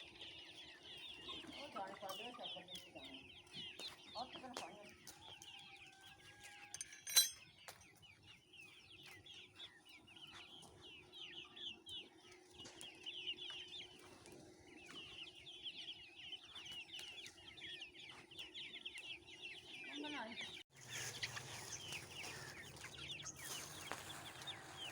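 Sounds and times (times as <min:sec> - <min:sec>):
poultry calling: 0:00.0 - 0:24.9.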